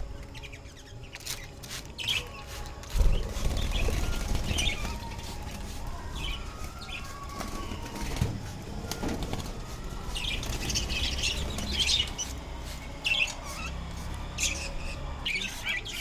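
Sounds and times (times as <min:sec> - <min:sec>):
wings fluttering: 0:01.1 - 0:16.0
budgerigars chirping: 0:10.2 - 0:16.0.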